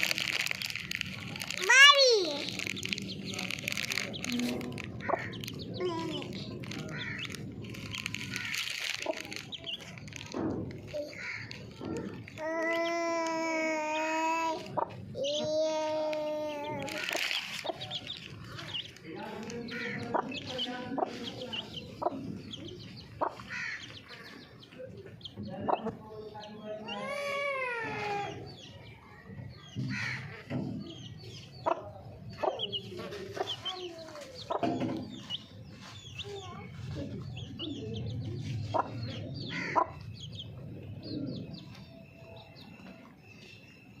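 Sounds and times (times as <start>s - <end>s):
chicks peeping: 0.0s - 44.0s
hen clucking: 16.8s - 25.9s, 37.0s - 41.6s.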